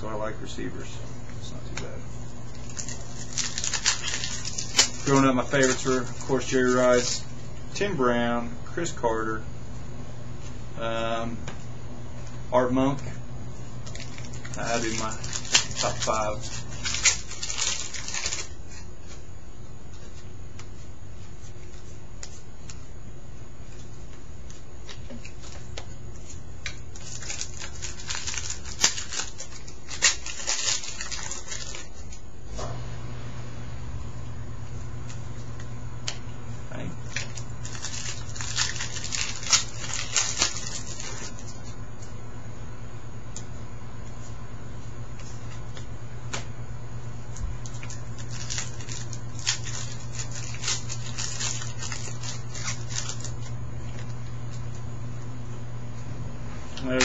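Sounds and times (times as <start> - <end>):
steady low hum: 0.0 - 57.0
cards rustling and scraping: 1.8 - 7.3, 13.8 - 19.2, 23.7 - 32.2, 37.1 - 41.7, 47.6 - 54.8.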